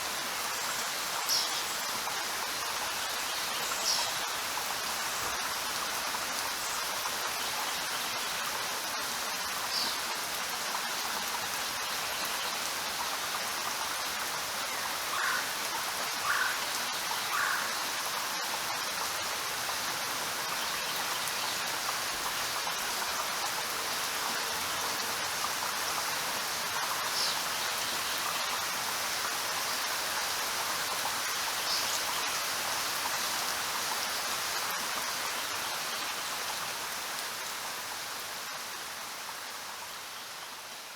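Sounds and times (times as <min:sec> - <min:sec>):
steady rain falling: 0:00.0 - 0:40.9.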